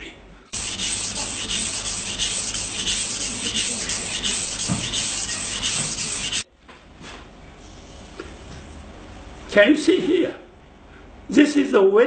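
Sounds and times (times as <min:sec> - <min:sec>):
knife rasping on whetstone: 0:00.6 - 0:06.4.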